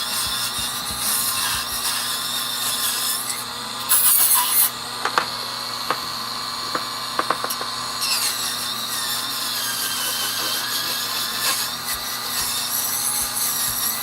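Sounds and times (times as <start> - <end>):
power tool sanding wood: 0.0 - 14.0.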